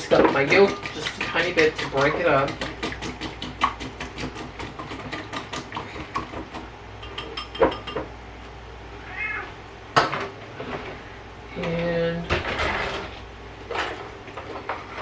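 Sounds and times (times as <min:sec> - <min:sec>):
whisk clicking against bowl: 0:00.0 - 0:08.0
cat meowing: 0:09.0 - 0:09.6.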